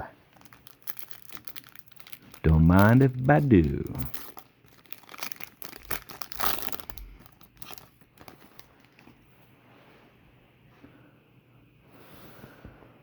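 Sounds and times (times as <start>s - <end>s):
wrapper tearing and crinkling: 0.3s - 3.1s, 4.1s - 9.0s.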